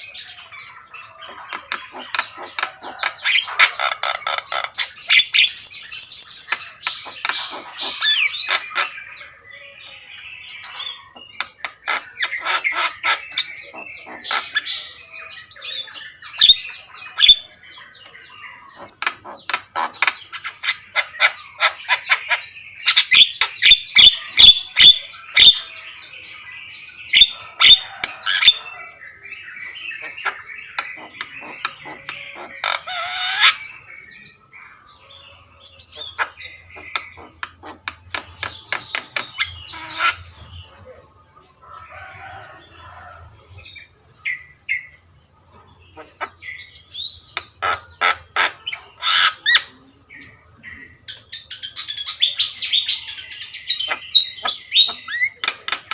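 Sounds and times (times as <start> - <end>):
bird clicking and chattering: 1.2 - 9.0, 18.8 - 22.2, 30.0 - 33.6, 36.1 - 40.2, 53.9 - 55.9.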